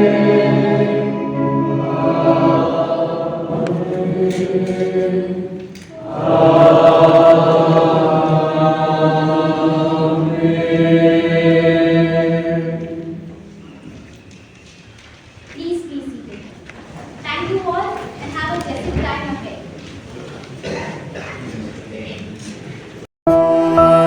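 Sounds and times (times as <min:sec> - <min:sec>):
choir singing sustained chords: 0:00.0 - 0:13.6, 0:23.3 - 0:24.0.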